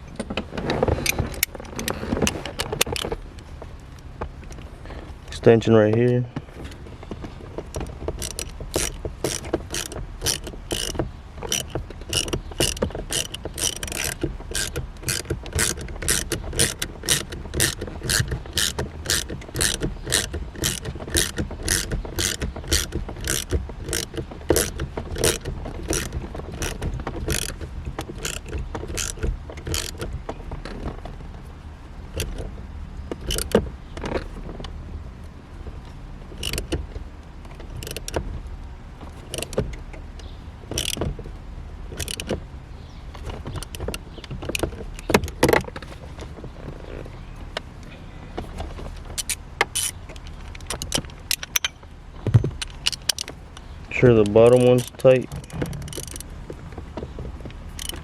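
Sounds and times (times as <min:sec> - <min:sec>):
hand ratchet clicking: 0:07.6 - 0:30.9, 0:33.1 - 0:34.2, 0:36.4 - 0:36.8, 0:40.7 - 0:41.1, 0:42.0 - 0:42.4, 0:49.1 - 0:51.8, 0:53.9 - 0:56.2, 0:57.8 - 0:58.0.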